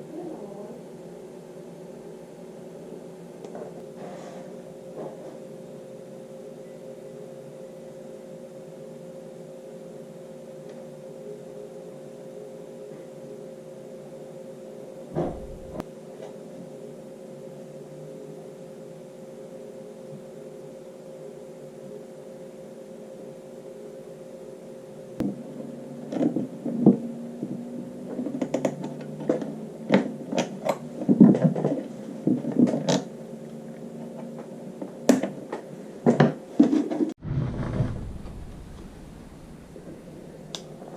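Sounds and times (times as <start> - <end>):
diesel heater humming: 15.2 - 15.8, 37.2 - 40.9.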